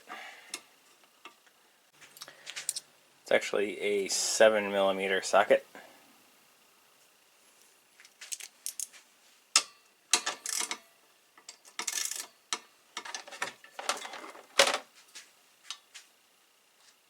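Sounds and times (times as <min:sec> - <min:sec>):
ratchet wrench clicking: 0:11.4 - 0:12.6.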